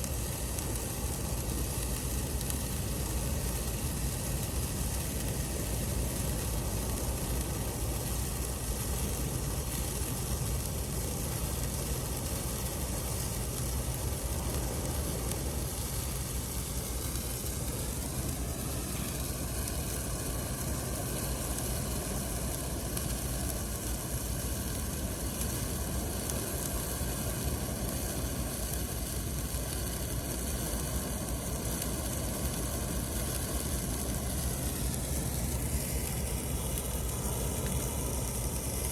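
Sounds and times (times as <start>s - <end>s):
firework wand hissing: 0.0s - 38.9s.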